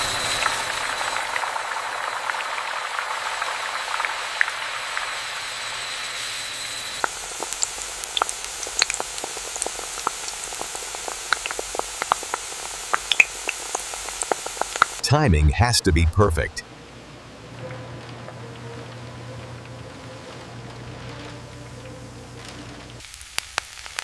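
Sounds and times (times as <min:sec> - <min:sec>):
chips frying in hot oil: 0:00.0 - 0:15.0, 0:19.5 - 0:24.0
oil crackling and popping: 0:00.0 - 0:15.0, 0:20.6 - 0:24.0.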